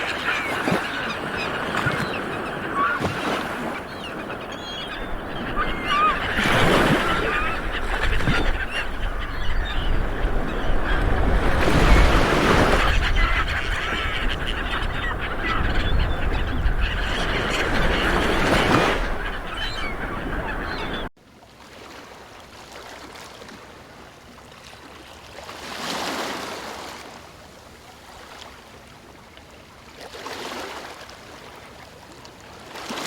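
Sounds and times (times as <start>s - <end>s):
birds honking: 0.0s - 21.1s
ocean waves breaking: 0.0s - 21.1s.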